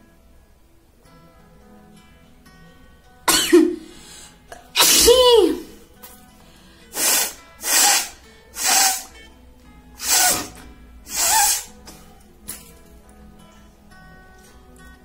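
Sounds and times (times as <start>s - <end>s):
faint background music: 0.0s - 15.0s
woman sneezing: 3.3s - 3.9s, 4.6s - 5.8s.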